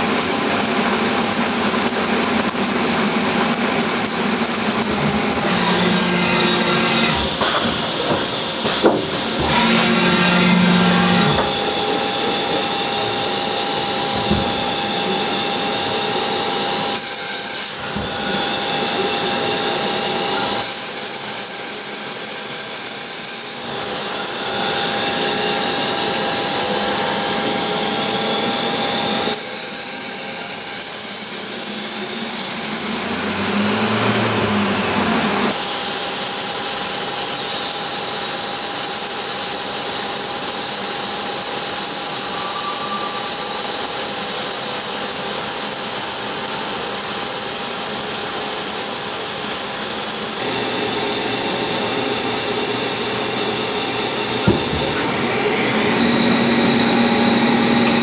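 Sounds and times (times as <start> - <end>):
hissing cutting noise: 0.0 - 7.7, 20.6 - 25.8, 29.3 - 50.4
lathe machine whine: 9.4 - 54.4, 55.0 - 58.0.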